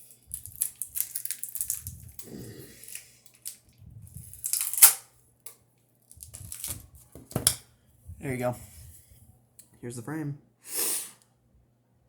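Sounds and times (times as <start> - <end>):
battery crackling as pried out: 0.3 - 2.2, 4.3 - 5.0, 6.2 - 6.8.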